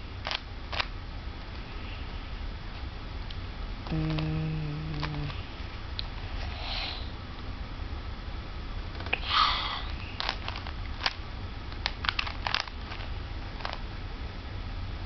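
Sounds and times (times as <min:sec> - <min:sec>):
plastic cube faces clicking: 0:03.9 - 0:05.3, 0:10.2 - 0:13.0.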